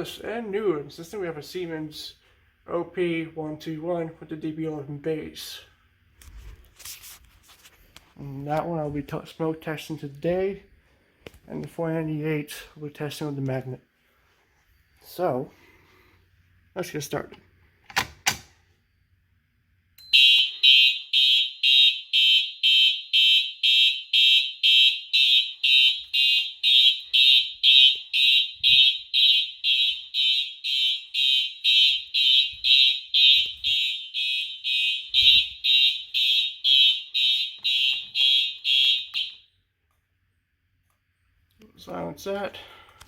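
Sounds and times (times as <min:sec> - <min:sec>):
fire alarm horns pulsing: 0:20.0 - 0:39.7.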